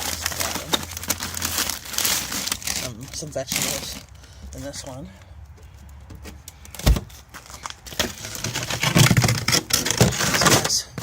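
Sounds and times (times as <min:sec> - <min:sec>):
frozen packages clattering: 0:00.0 - 0:04.1, 0:06.8 - 0:11.0
plastic rustling: 0:00.0 - 0:04.8, 0:06.6 - 0:11.0.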